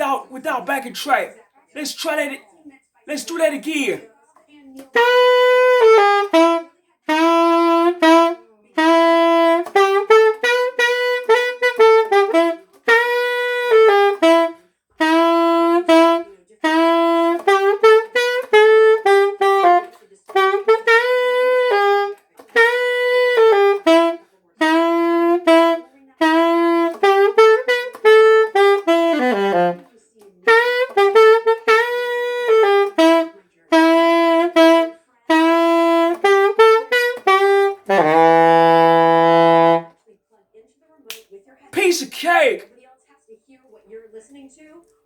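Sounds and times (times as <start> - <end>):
alto saxophone solo: 4.8 - 40.0.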